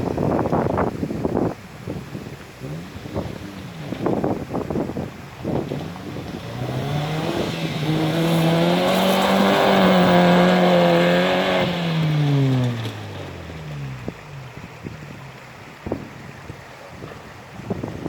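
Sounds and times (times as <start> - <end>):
car engine revving: 2.4 - 15.7.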